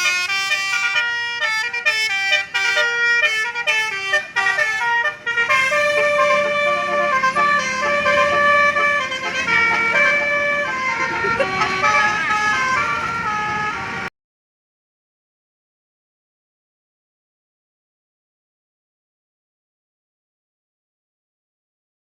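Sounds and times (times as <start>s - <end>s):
musical bus horn melody: 0.0s - 14.1s.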